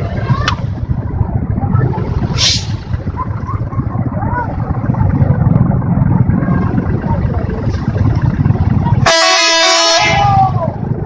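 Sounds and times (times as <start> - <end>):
steady low rumble: 0.0 - 11.0
bus multi-tone horn tune: 9.0 - 10.4.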